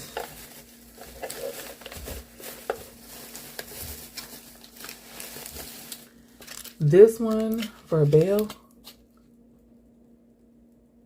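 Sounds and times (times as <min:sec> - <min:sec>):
shopping items clicking and rustling: 0:00.0 - 0:08.6
faint steady hum: 0:00.0 - 0:11.0.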